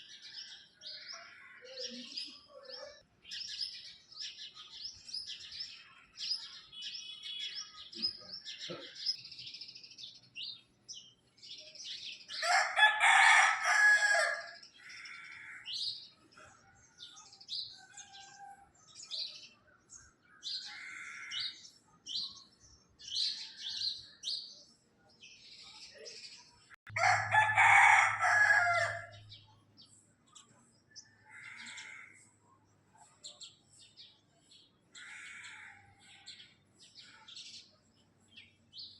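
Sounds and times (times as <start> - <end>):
small birds chirping: 0.0 - 27.0, 28.2 - 38.9
rooster crowing: 12.4 - 14.6, 26.9 - 29.2.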